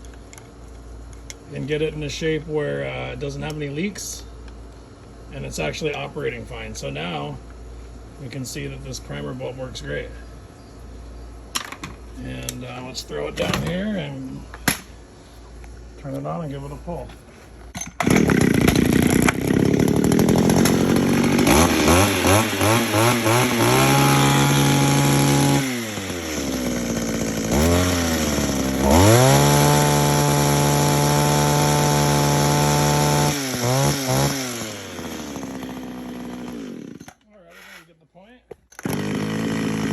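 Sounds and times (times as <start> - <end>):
small two-stroke engine revving: 18.0 - 37.0, 38.8 - 39.9.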